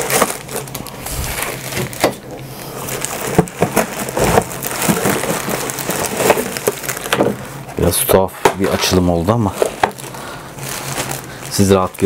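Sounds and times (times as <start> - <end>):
cardboard rustling and crinkling: 0.0 - 12.0.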